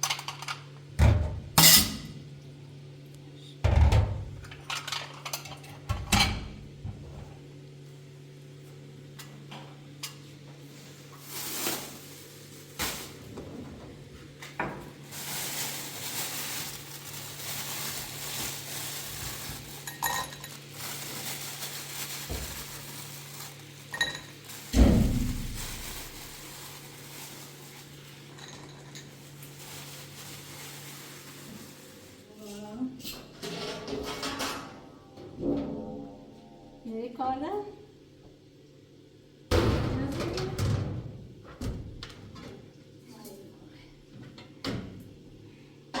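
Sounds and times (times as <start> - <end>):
dishes and utensils clinking: 1.6 - 2.2, 19.8 - 20.8, 33.0 - 35.2
steady low hum: 34.2 - 40.1.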